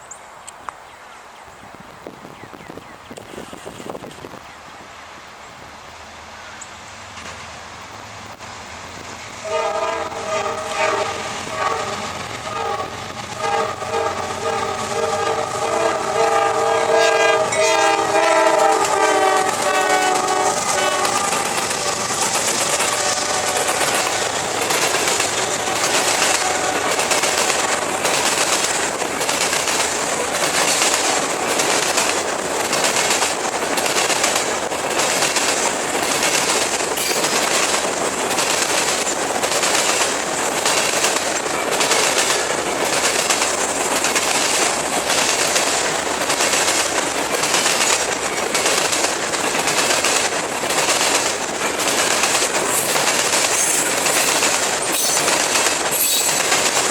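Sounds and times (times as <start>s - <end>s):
steel wheels hissing on rail: 6.9s - 56.9s
train wheels clicking over rail joints: 17.4s - 56.9s.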